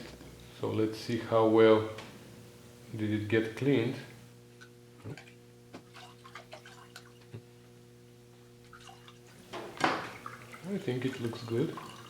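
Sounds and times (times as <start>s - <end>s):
faint steady hum: 0.0s - 12.0s
water dripping and splashing: 5.9s - 7.3s, 8.6s - 12.0s.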